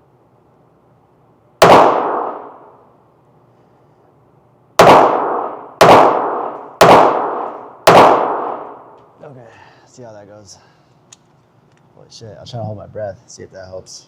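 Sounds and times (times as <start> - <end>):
pistol shots echoing: 1.6 - 2.8, 4.8 - 9.0.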